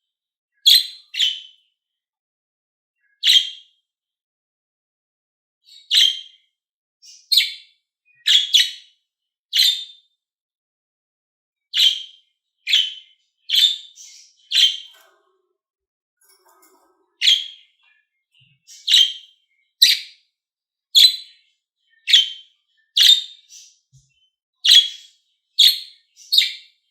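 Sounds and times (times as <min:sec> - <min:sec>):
budgerigar chirping: 0:22.1 - 0:22.4, 0:23.0 - 0:23.7, 0:24.6 - 0:26.6.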